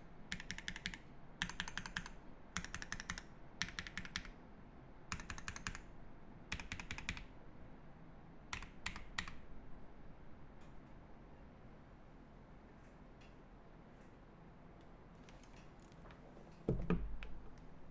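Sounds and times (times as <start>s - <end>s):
mechanical keyboard typing: 0.3s - 4.4s, 5.1s - 5.8s, 6.5s - 7.3s, 8.5s - 9.4s.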